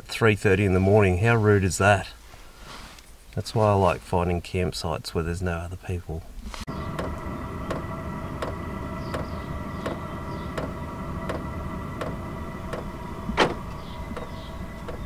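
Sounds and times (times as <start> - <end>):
fuel pump ticking: 6.7 - 15.0
heater fan hum and whine: 6.7 - 15.0.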